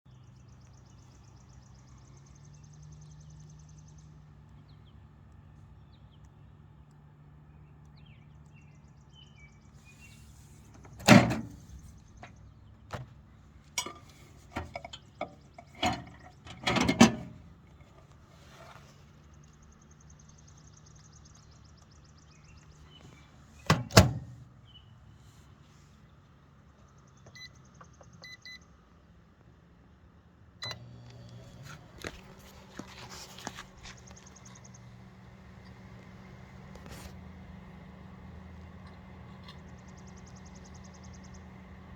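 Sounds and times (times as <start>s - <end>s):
microwave oven humming: 30.6s - 32.8s, 34.2s - 41.9s.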